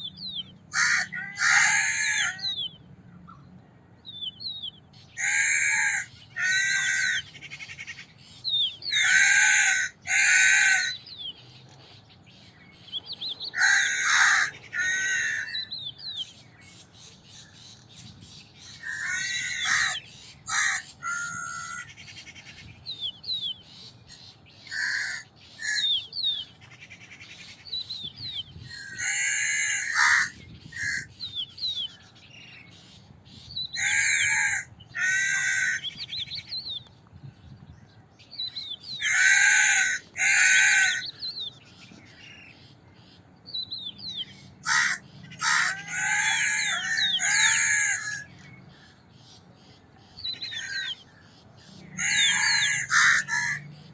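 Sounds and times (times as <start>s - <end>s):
crows cawing: 0.7s - 2.5s, 5.2s - 8.0s, 8.9s - 11.1s, 13.5s - 15.8s, 18.7s - 22.6s, 24.6s - 26.0s, 28.7s - 31.2s, 33.8s - 36.1s, 39.0s - 41.4s, 44.6s - 49.0s, 50.3s - 51.3s, 51.9s - 53.8s.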